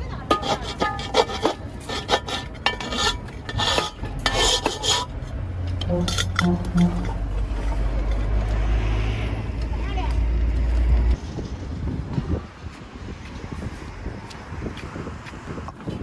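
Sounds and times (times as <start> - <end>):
steady low rumble: 0.0 - 15.9
hand tools clinking on wood: 0.1 - 8.5.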